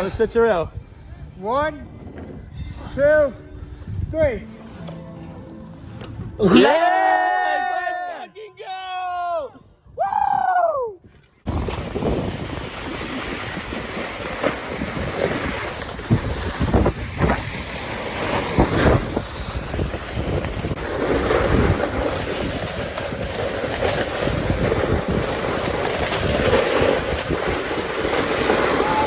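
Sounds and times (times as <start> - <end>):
wind buffeting microphone: 0.0 - 4.5, 9.9 - 29.0
snowboard scraping snow: 11.5 - 29.0.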